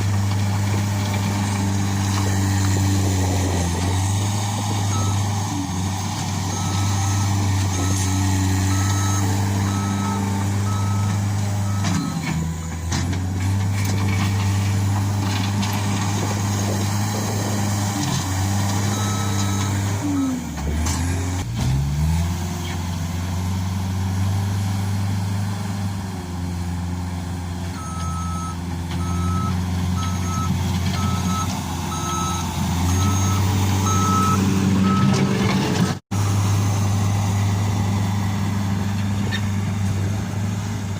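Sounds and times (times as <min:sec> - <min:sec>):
diesel engine running: 0:00.0 - 0:40.9
reversing alarm beeping: 0:06.5 - 0:12.4, 0:27.8 - 0:35.2.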